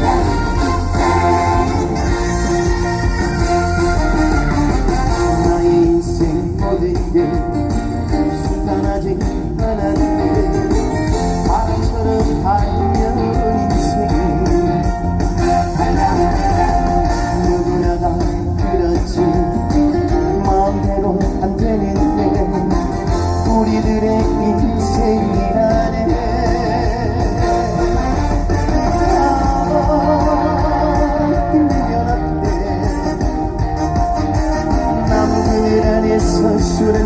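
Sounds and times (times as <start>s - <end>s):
guitar: 0.0s - 37.0s
live band music: 0.0s - 37.0s.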